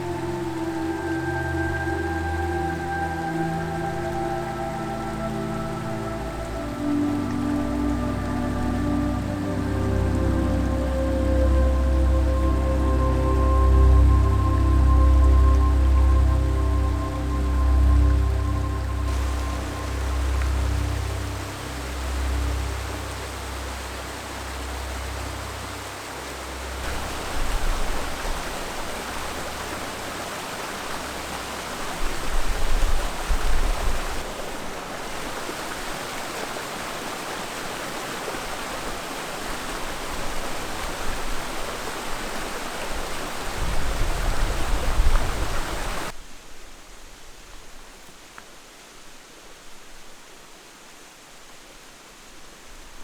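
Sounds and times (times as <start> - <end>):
rushing river water: 0.0 - 53.0.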